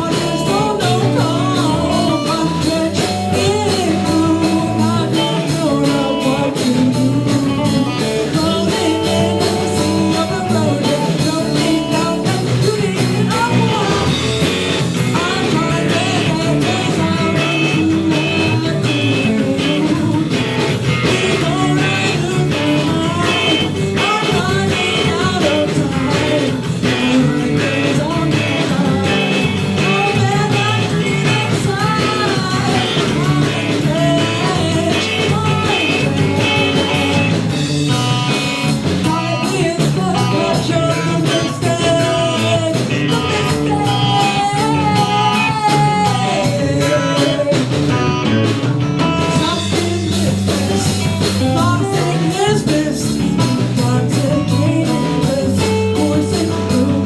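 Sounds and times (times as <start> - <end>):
person singing: 0.0 - 48.5, 49.1 - 57.0
rock band playing live: 0.0 - 57.0.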